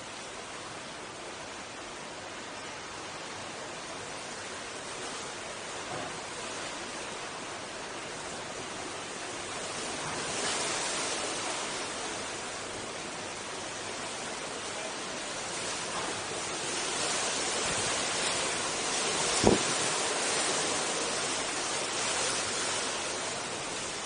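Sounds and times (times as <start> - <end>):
strong wind rushing: 19.4 - 19.8.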